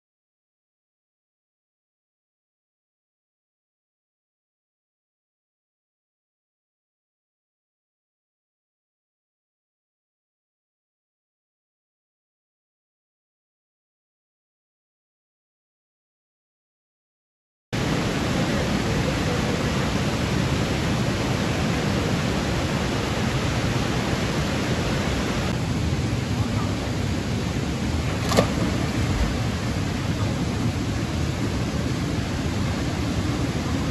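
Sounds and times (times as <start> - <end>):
waterfall roaring: 17.8 - 33.9.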